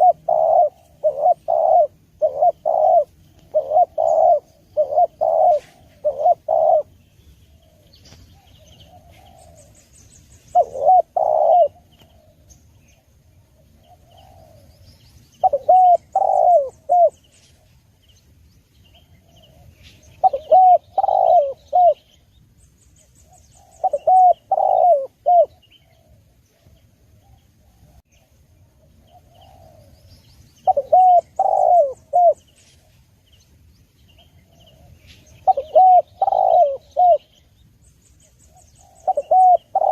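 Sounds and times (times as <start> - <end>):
dove cooing: 0.0 - 17.8, 18.9 - 22.2, 23.2 - 28.0, 28.7 - 30.0, 30.6 - 33.0, 34.2 - 37.5, 38.5 - 39.9
faint small birds chirping: 0.0 - 39.9.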